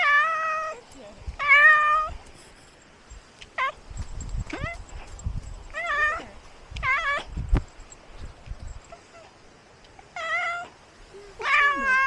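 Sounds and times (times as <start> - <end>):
cat meowing: 11.4 - 12.0.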